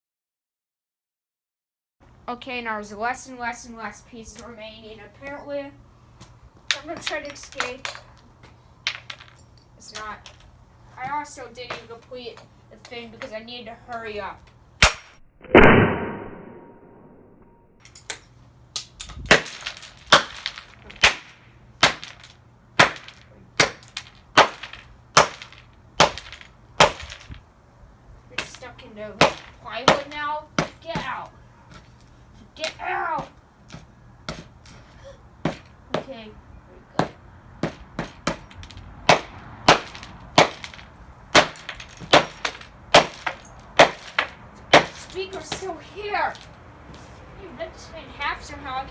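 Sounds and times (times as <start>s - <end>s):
hammer smashing alarm clock: 38.1s - 45.3s.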